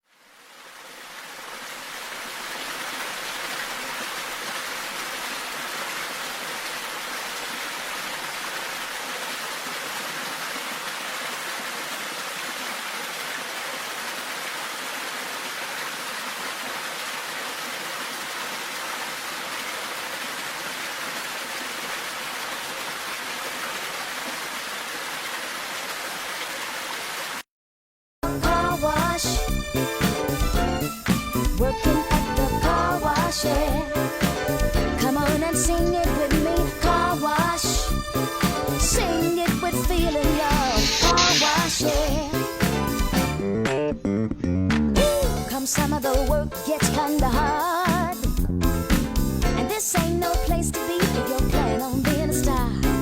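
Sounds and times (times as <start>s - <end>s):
music: 28.2s - 53.0s.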